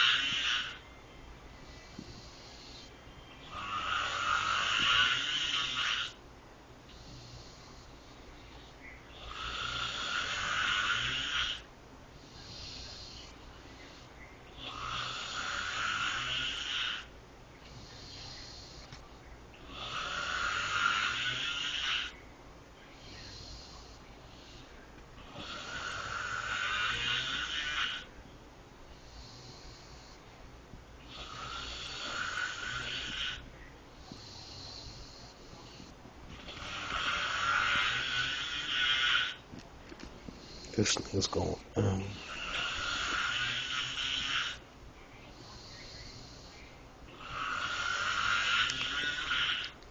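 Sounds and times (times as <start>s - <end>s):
person snoring: 0.0s - 0.8s, 3.5s - 6.2s, 9.2s - 11.7s, 14.6s - 17.1s, 19.6s - 22.2s, 25.2s - 28.1s, 31.1s - 33.4s, 34.1s - 39.4s, 40.4s - 44.6s, 47.1s - 49.8s
soft breathing: 0.0s - 5.7s, 6.8s - 10.3s, 12.1s - 15.2s, 17.0s - 20.1s, 22.8s - 26.0s, 28.9s - 43.9s, 44.5s - 49.8s.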